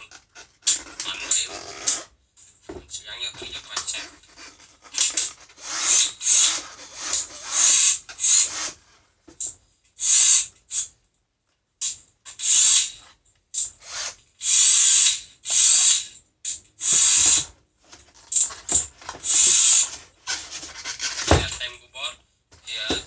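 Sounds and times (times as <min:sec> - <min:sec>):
cordless drill ratcheting clatter: 0:03.6 - 0:08.9, 0:13.8 - 0:14.2.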